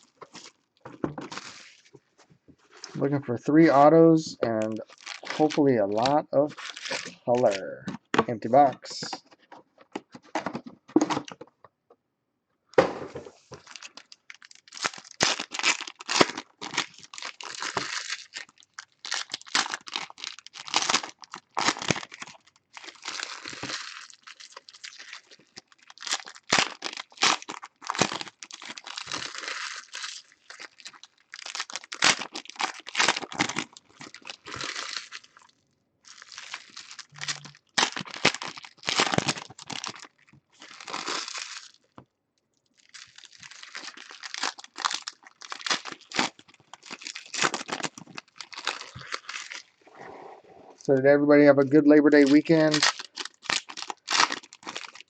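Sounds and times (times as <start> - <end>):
foil wrappers ripping and crinkling: 1.2 - 1.9, 4.6 - 7.7, 13.4 - 42.0, 42.8 - 49.8, 52.1 - 55.0.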